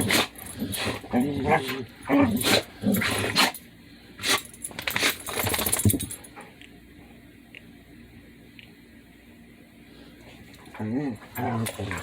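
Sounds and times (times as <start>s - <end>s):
dogs sneezing and snorting: 0.0s - 3.6s, 4.2s - 5.6s.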